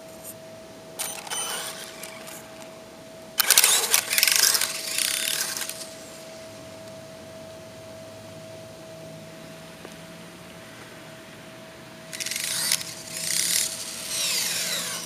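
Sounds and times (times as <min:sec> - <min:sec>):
electric toy truck drivetrain whirring: 0:01.0 - 0:02.7, 0:03.4 - 0:06.2, 0:12.1 - 0:15.0.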